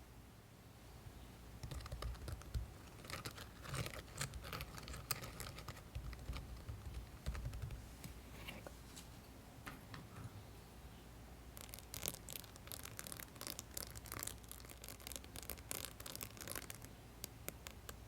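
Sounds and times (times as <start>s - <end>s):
crunchy slime crackling: 1.6s - 7.8s, 11.5s - 18.0s.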